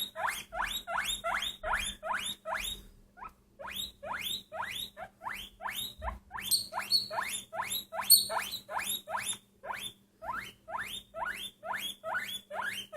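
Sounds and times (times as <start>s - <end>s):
small animal squeaking: 0.0s - 12.9s
higher sharper squeaks: 3.7s - 12.9s.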